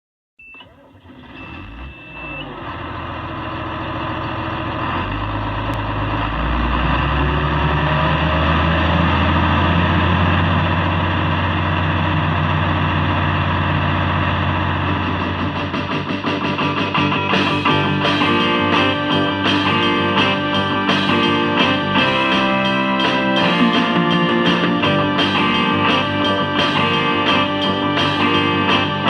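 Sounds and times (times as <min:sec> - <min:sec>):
steady warning beep: 0:00.4 - 0:00.7, 0:01.4 - 0:02.5
heavy vehicle engine revving: 0:01.0 - 0:29.0.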